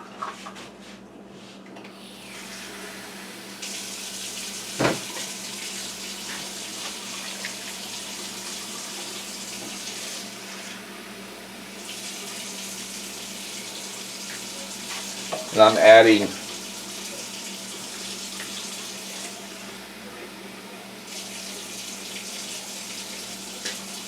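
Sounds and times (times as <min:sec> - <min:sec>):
tap water filling container: 0:03.6 - 0:10.8, 0:11.7 - 0:19.5, 0:21.1 - 0:23.9.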